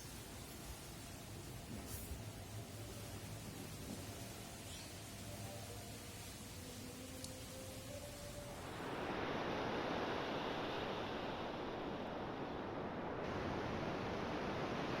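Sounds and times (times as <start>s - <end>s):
steady rushing noise: 7.7s - 15.0s.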